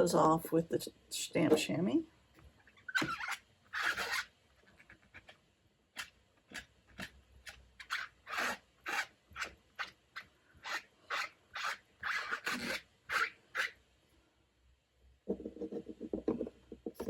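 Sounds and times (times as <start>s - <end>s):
rubbing strokes on chamois pad: 7.8s - 13.8s.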